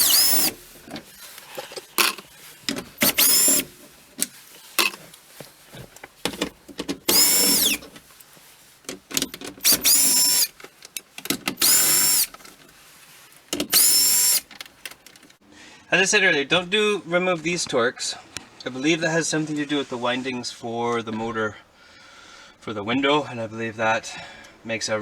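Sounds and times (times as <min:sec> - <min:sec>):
cordless drill whirring: 0:00.0 - 0:05.0, 0:06.2 - 0:08.0, 0:09.1 - 0:10.6, 0:11.2 - 0:12.5, 0:13.5 - 0:15.0
parts clicking and rattling: 0:00.0 - 0:15.4.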